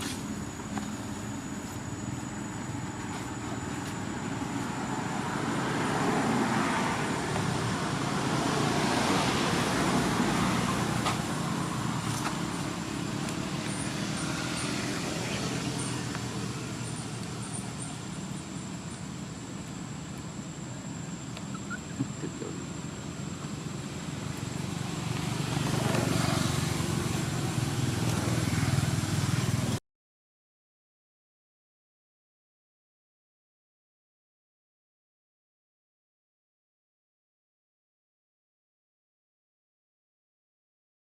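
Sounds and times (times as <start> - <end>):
motor vehicle passing: 0.0 - 18.4, 21.6 - 29.8.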